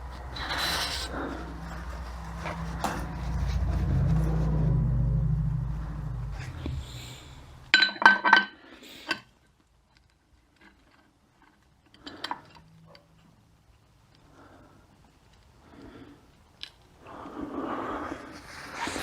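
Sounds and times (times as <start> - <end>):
low engine hum: 0.0 - 7.7.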